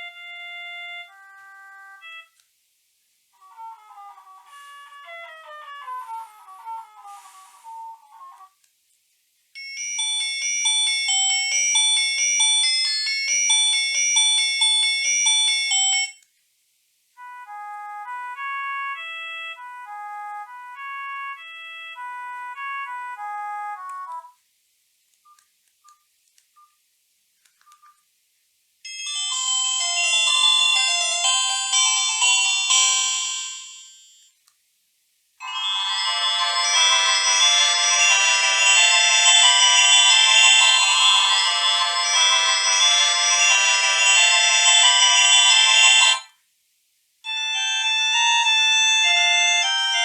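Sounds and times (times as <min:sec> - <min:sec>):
phone ringtone melodies: 0:00.0 - 0:02.3, 0:09.6 - 0:16.2, 0:17.2 - 0:24.3, 0:28.9 - 0:34.2, 0:35.4 - 0:46.3, 0:47.3 - 0:50.0.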